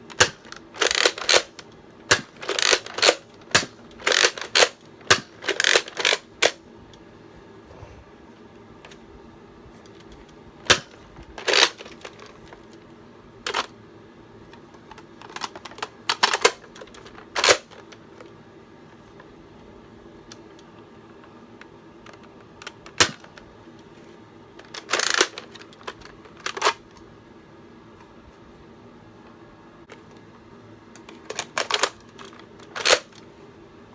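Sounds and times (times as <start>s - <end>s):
toy blaster plastic clacks: 0.1s - 6.6s, 10.7s - 12.6s, 13.4s - 13.7s, 14.7s - 18.0s, 22.0s - 23.4s, 24.6s - 26.9s, 31.0s - 33.2s.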